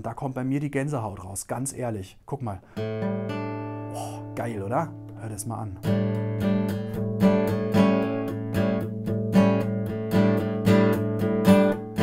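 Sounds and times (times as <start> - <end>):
acoustic guitar strumming: 2.7 - 12.0.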